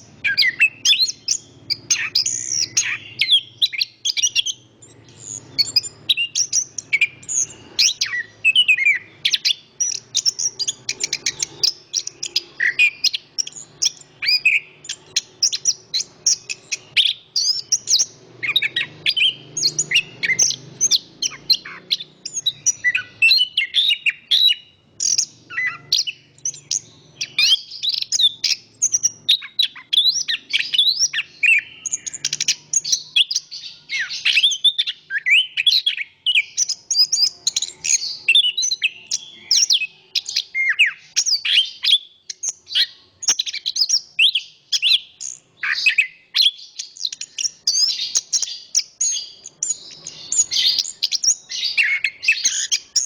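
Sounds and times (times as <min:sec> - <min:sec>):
thrush singing: 0:00.0 - 0:24.4.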